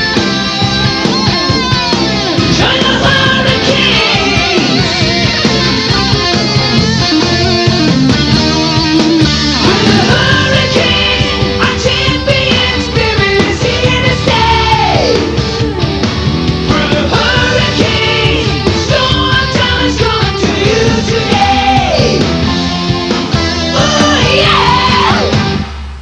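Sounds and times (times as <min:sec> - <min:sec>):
rock band playing: 0:00.0 - 0:26.0
person singing: 0:01.0 - 0:05.4, 0:09.6 - 0:15.8, 0:16.7 - 0:22.4, 0:23.4 - 0:25.5.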